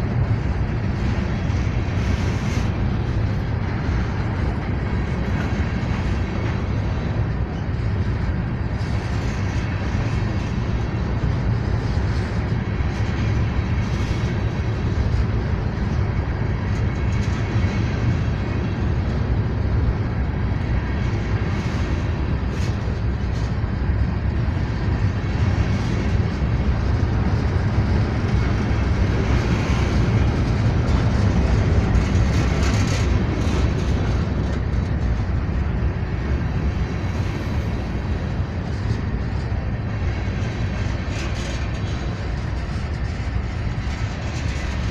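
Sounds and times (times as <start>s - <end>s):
freight train rolling past: 0.0s - 44.9s.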